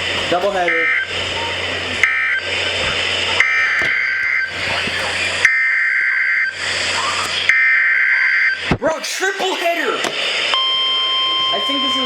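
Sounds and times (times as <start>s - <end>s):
radio hiss: 0.0s - 7.5s
screechy digital data bursts: 0.3s - 8.7s.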